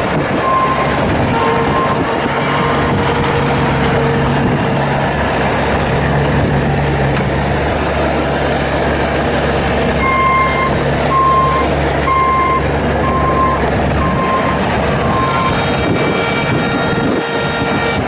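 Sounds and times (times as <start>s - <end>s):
diesel engine running: 0.0s - 18.0s
backup alarm beeping: 10.0s - 15.6s.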